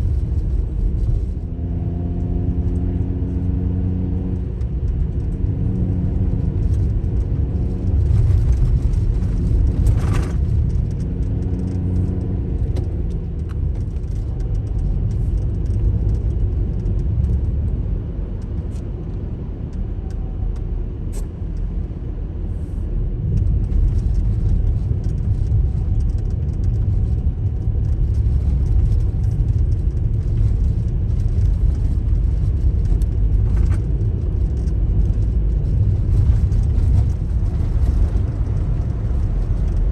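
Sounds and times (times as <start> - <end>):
car driving on snowy road: 0.0 - 39.9
faint engine hum: 0.0 - 39.9.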